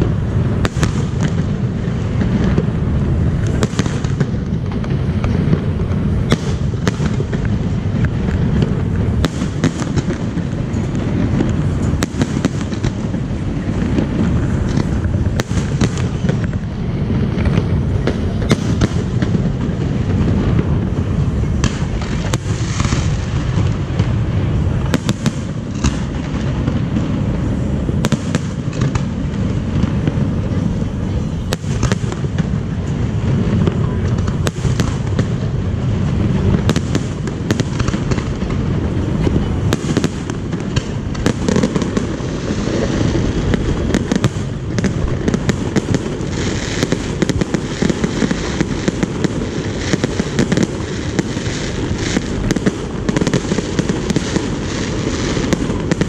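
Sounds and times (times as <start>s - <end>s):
fireworks bangs and crackles: 0.0s - 56.0s
fireworks booming: 0.0s - 56.0s.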